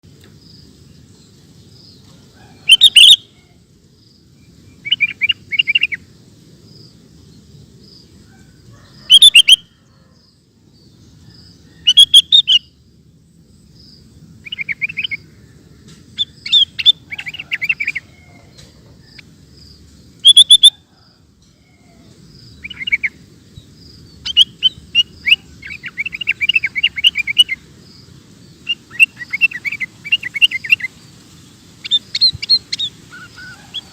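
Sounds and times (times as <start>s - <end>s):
bird chirping and chattering: 2.7s - 3.3s, 9.1s - 9.6s, 11.9s - 12.7s, 14.4s - 15.3s, 16.1s - 18.0s, 20.2s - 20.7s, 22.5s - 33.8s.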